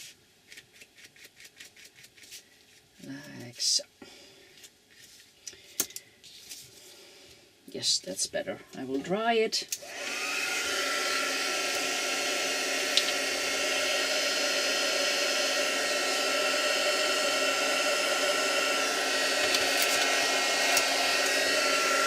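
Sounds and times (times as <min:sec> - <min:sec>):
hot-air dryer blowing: 0:09.8 - 0:22.0.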